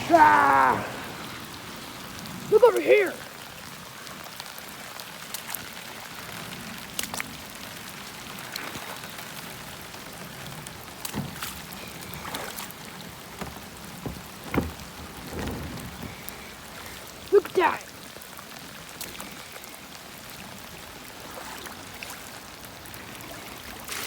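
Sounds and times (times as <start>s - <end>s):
heavy rain falling: 0.0s - 24.0s
raindrops hitting close by: 0.0s - 24.0s
water splashes: 0.0s - 24.0s.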